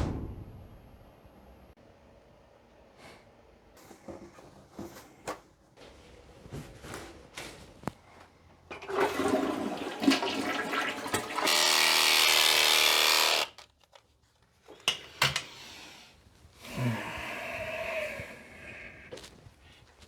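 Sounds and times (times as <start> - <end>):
toilet flushing: 8.7 - 12.2.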